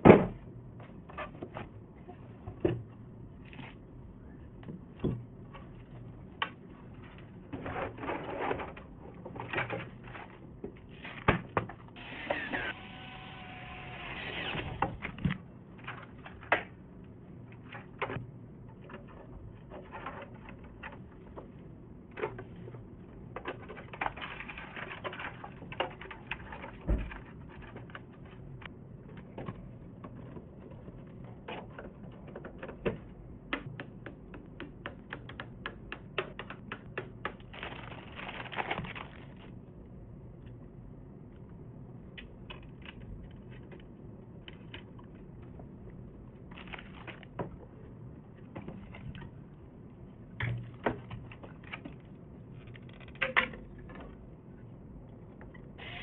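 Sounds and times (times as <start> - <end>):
clicks taps and knocks of parts: 31.5 - 37.5.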